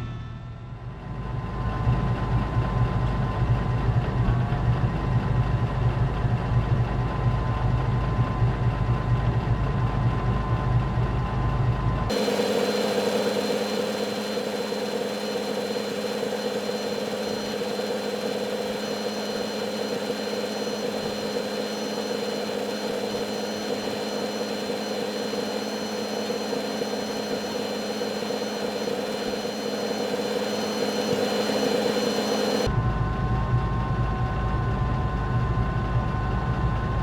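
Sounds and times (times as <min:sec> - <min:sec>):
tractor engine running: 0:12.1 - 0:32.7.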